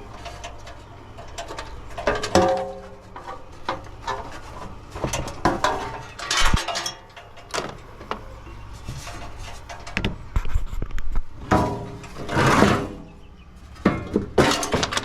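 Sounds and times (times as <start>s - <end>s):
tools clicking and scraping parts: 0.0s - 11.2s.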